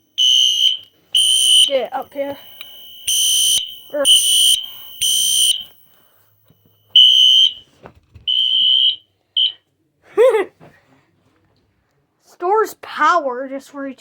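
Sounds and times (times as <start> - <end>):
fire alarm horn blasts: 0.0 - 7.7, 8.3 - 9.6.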